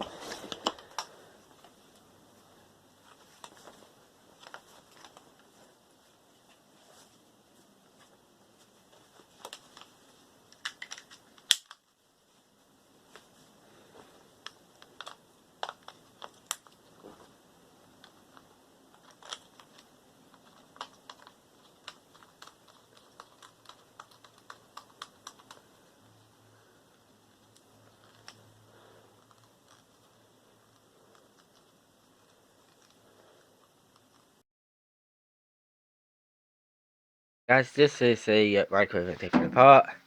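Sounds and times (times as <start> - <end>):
small objects clicking and tapping: 10.5 - 11.9
sharp knock: 39.2 - 39.8.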